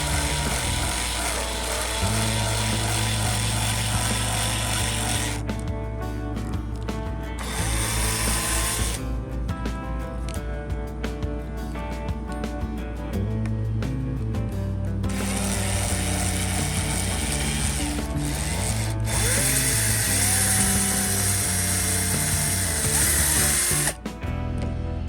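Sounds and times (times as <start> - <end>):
small power drill running: 0.0 - 5.4, 7.4 - 9.0, 15.1 - 24.0
background music: 0.0 - 25.0.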